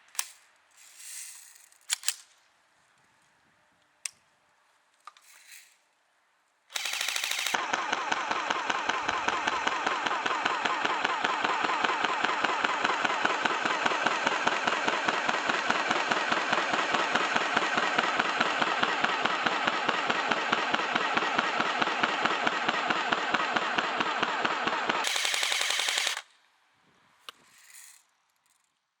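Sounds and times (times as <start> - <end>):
airsoft gun firing full auto: 6.7 - 26.4.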